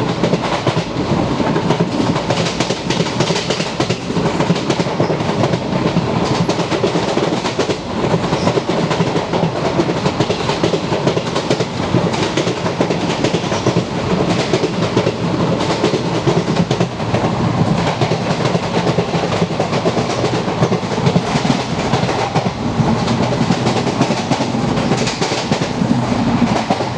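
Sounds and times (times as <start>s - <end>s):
train coach rumbling: 0.0s - 26.9s.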